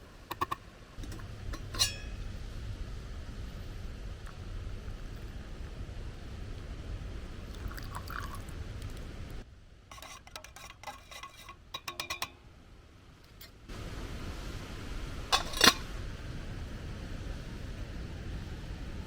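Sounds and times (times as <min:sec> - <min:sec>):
cup and utensils clinking: 0:00.3 - 0:02.2, 0:07.5 - 0:08.4, 0:09.9 - 0:12.4, 0:15.3 - 0:15.9.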